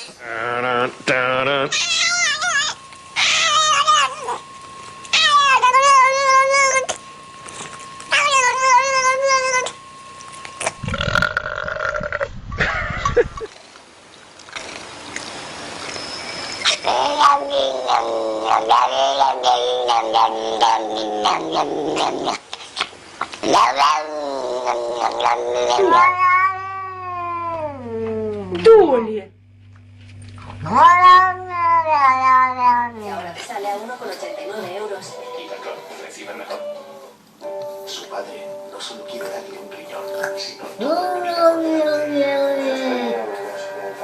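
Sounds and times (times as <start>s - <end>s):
cat yowling: 1.6s - 4.4s, 5.1s - 6.9s, 8.1s - 9.8s, 16.6s - 22.1s, 23.5s - 28.4s, 30.6s - 33.1s, 36.5s - 37.2s, 40.8s - 43.6s
faint steady high tone: 2.0s - 11.8s, 34.0s - 44.0s.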